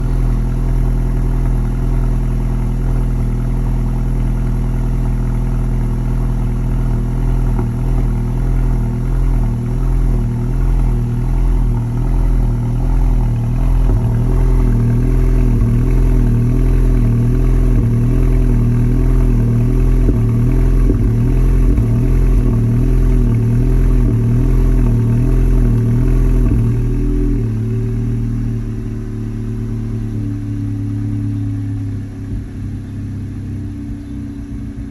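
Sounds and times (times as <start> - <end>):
car engine hunting idle: 0.0 - 34.9.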